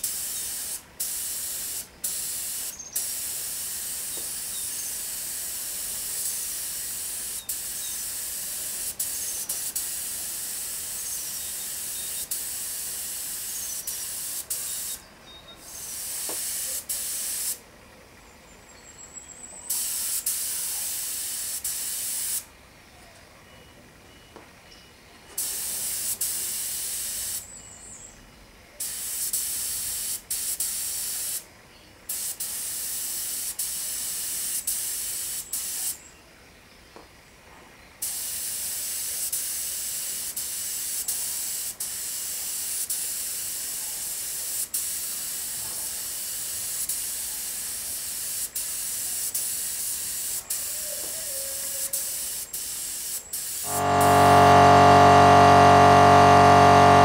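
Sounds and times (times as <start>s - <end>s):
spray hissing: 0.0s - 15.0s, 15.7s - 17.6s, 52.2s - 57.0s.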